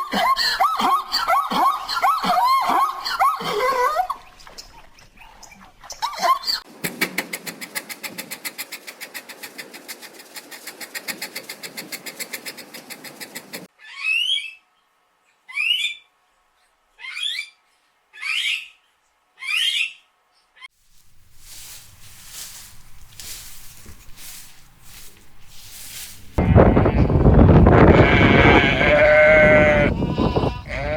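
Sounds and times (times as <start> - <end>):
animal rapid pulsing rattle: 6.9 - 13.7.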